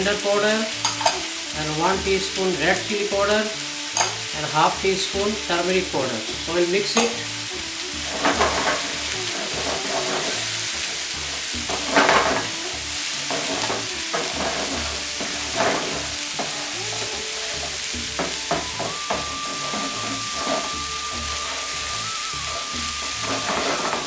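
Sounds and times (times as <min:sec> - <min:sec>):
masala sizzling in a pan: 0:00.0 - 0:24.0
spatula scraping a pan: 0:06.8 - 0:24.0.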